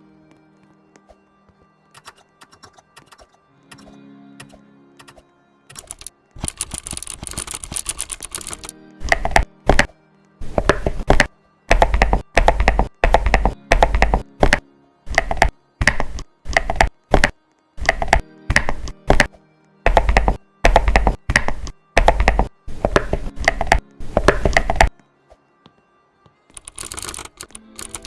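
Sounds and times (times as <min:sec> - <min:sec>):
soft background music: 0:00.0 - 0:28.0
keyboard key clicks: 0:02.0 - 0:19.3, 0:19.9 - 0:24.9, 0:26.5 - 0:28.0
deep thocky key presses: 0:05.8 - 0:19.3, 0:19.9 - 0:24.9.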